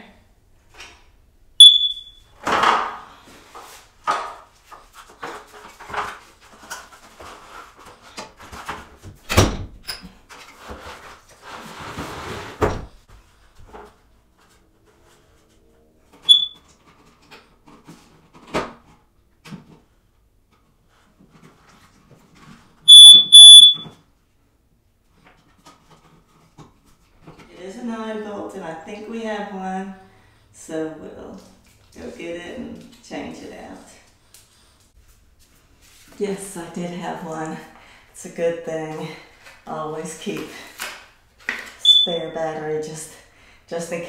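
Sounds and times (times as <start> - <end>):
smoke alarm beeps: 1.6 - 2.3, 16.3 - 16.6, 22.9 - 24.0, 41.8 - 42.3
smoke alarm chirp: 1.6 - 2.3, 16.3 - 16.6, 22.9 - 23.9, 41.8 - 42.2.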